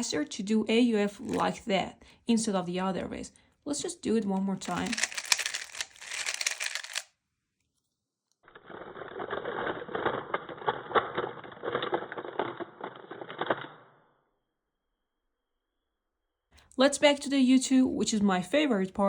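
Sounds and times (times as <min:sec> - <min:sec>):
puzzle cube clicking rattle: 0:01.2 - 0:01.6, 0:04.6 - 0:07.1.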